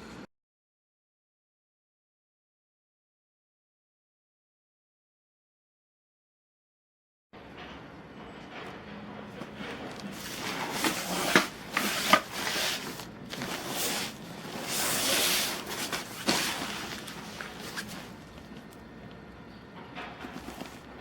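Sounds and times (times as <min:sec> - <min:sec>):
rustling handling noise: 0:09.3 - 0:21.0.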